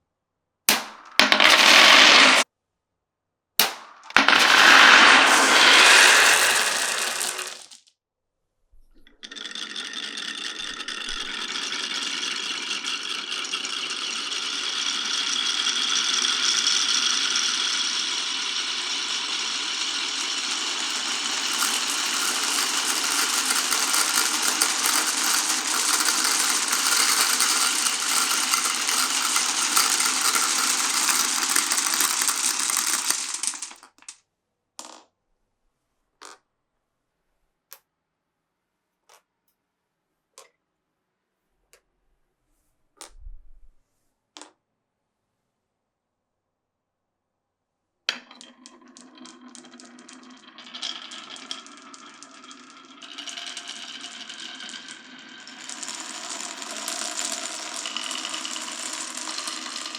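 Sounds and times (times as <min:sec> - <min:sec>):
glass marbles rattling on tracks: 0:01.2 - 0:02.4, 0:04.1 - 0:07.8, 0:09.1 - 0:34.1, 0:48.2 - 0:59.9.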